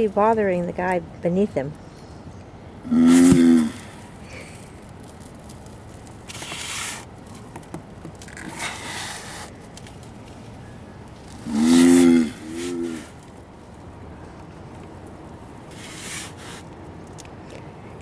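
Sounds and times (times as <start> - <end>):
tortoise deep groans: 2.8 - 4.6, 11.4 - 13.2
soft hissing: 15.7 - 16.7.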